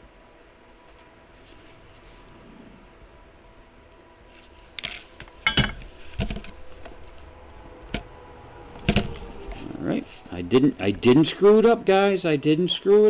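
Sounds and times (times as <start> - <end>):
faint steady hum: 0.0 - 13.0
tools clicking and knocking: 4.7 - 7.2.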